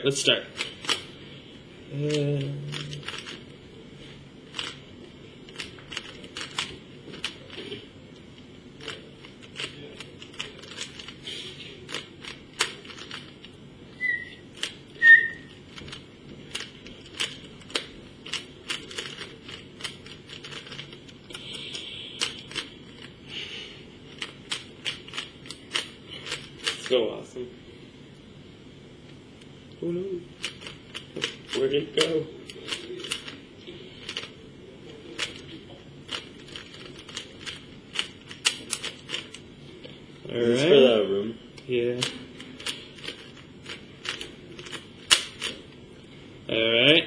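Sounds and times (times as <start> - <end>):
plastic puzzle cube clicking: 2.7 - 3.4, 15.8 - 20.9, 36.1 - 39.4
short high squeaks: 14.0 - 14.4, 15.0 - 15.5.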